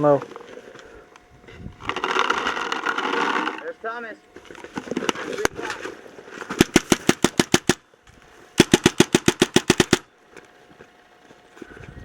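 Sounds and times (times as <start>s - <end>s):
paintball marker firing rapidly: 6.5s - 7.8s, 8.6s - 10.1s.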